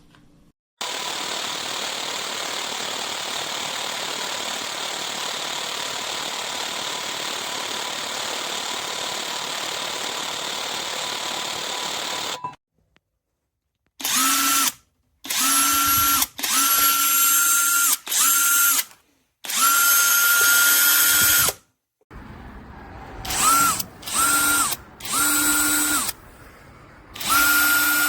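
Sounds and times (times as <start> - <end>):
cordless drill whining: 0.8 - 12.4, 14.0 - 21.6, 23.2 - 26.2, 27.2 - 28.0.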